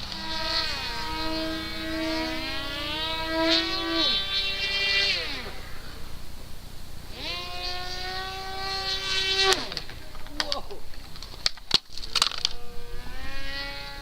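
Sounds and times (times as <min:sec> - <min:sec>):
electric motor whining: 0:00.0 - 0:14.0
sharp clicks and knocks: 0:09.5 - 0:12.6.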